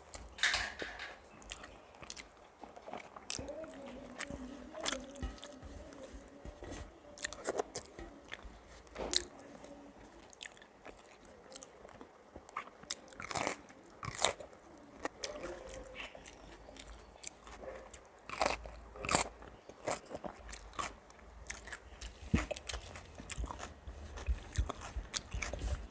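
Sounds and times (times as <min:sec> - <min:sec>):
person chewing food: 0:01.2 - 0:25.9.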